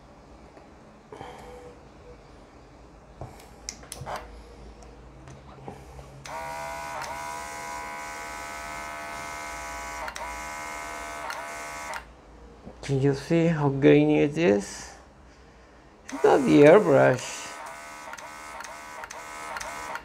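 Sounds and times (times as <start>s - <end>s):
compressor motor whine: 6.2s - 12.1s, 16.1s - 20.0s.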